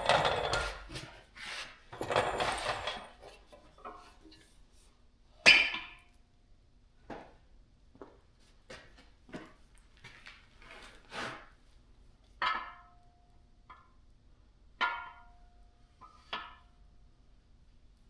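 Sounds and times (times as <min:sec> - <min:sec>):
metal parts scraping: 0:00.0 - 0:01.1, 0:01.9 - 0:03.5.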